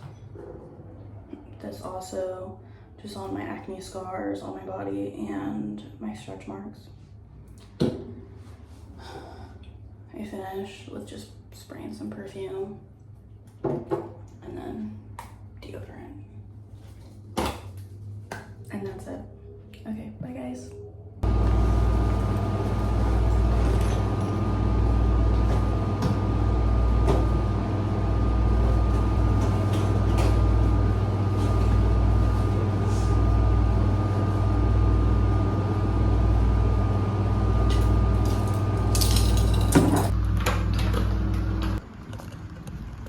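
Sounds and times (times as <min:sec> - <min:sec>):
machine hum with low throb: 0:20.9 - 0:41.8.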